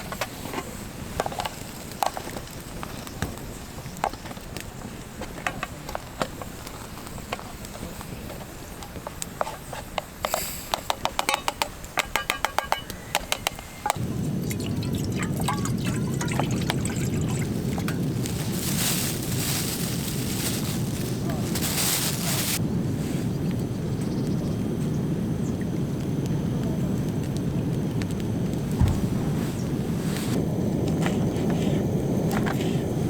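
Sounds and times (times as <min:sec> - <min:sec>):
liquid sounds: 0:13.9 - 0:18.8
steady low rushing noise: 0:28.5 - 0:30.8.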